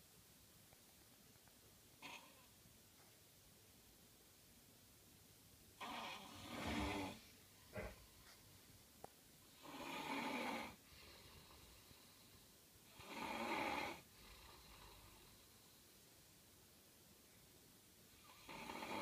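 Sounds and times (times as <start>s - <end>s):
man snoring loudly: 5.8s - 7.2s, 9.6s - 10.8s, 13.0s - 14.0s, 18.3s - 19.0s.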